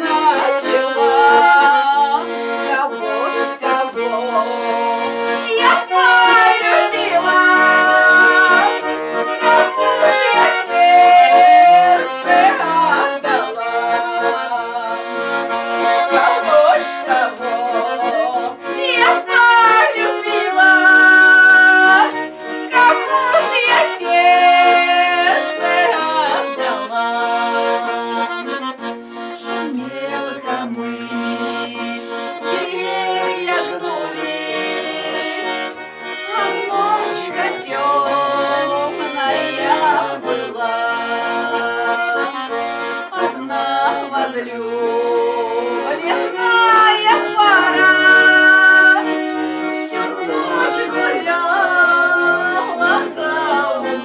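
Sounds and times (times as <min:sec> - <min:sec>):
accordion folk melody: 0:00.0 - 0:54.0.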